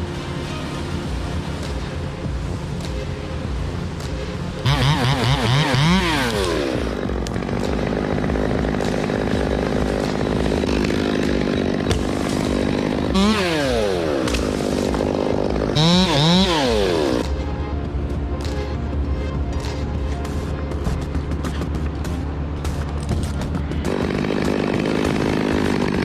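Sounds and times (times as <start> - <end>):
chainsaw engine revving: 4.6 - 17.2, 23.8 - 26.0.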